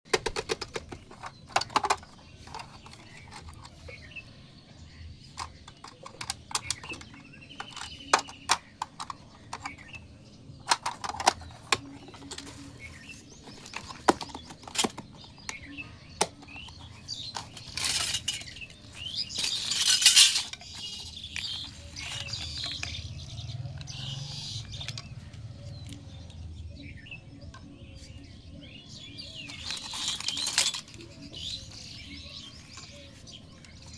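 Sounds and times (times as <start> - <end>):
plastic pieces clicking and tapping: 0.1 - 3.9, 5.3 - 10.0, 10.6 - 12.6, 13.4 - 24.0, 29.5 - 33.9.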